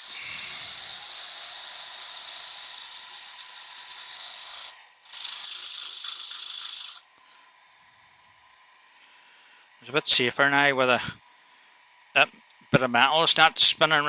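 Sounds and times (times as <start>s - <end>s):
compressed-air blow gun hissing: 0.0s - 7.0s.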